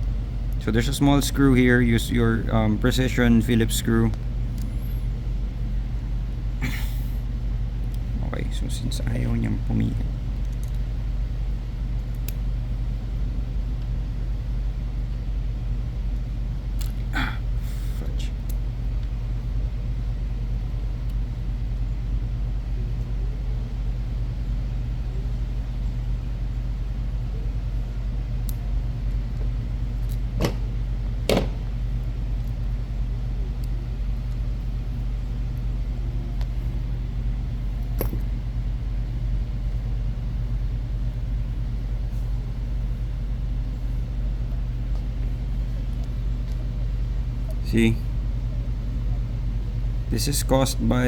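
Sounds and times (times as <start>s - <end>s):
low electrical hum: 0.0s - 51.0s.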